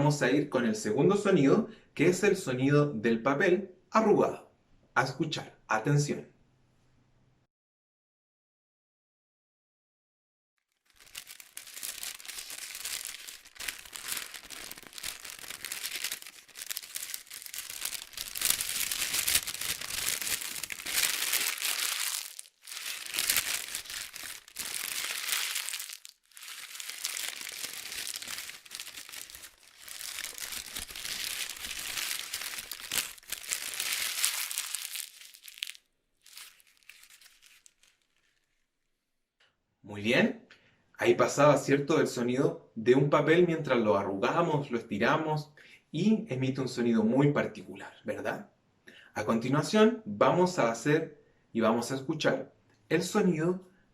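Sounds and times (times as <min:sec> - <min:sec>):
paper crumpling: 0:10.8 - 0:38.8.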